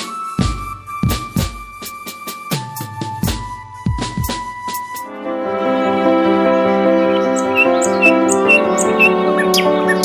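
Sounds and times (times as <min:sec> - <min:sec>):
background music with sustained chords: 0:04.7 - 0:10.0
high chirping notes: 0:04.7 - 0:10.0.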